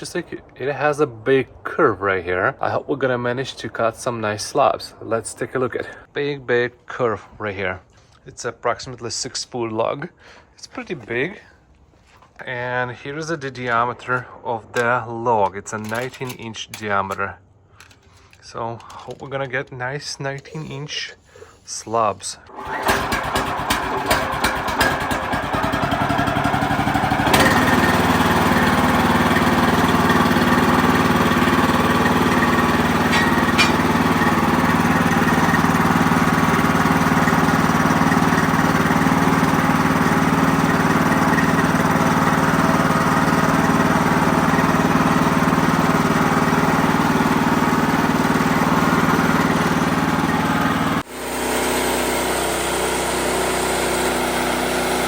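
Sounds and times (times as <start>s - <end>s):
sawmill engine running: 22.4s - 55.0s.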